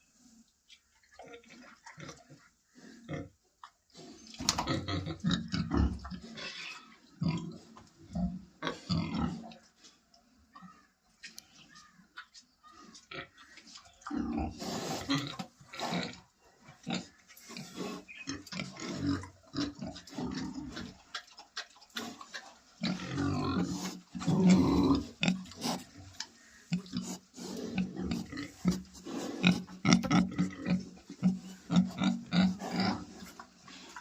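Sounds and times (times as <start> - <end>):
pigs grunting: 4.4 - 9.6, 12.6 - 34.0.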